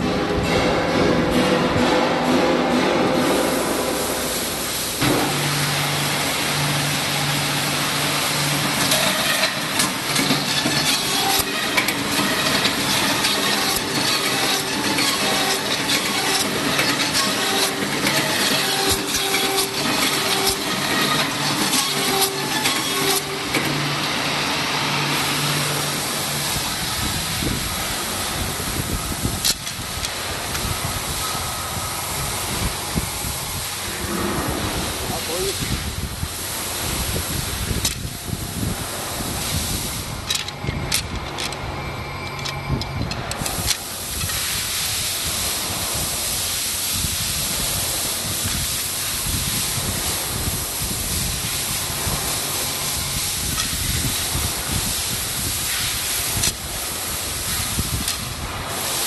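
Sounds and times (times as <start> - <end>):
machine hum: 0.0 - 43.7
bamboo clicking and rattling: 29.4 - 30.7, 40.1 - 44.4.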